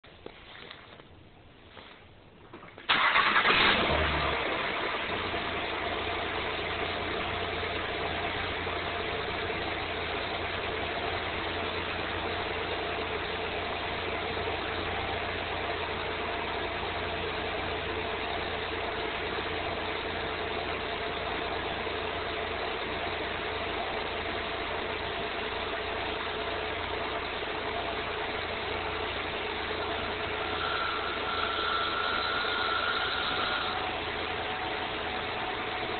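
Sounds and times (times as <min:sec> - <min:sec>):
car engine idling: 0:00.0 - 0:35.9
engine starting with grinding: 0:02.5 - 0:05.3.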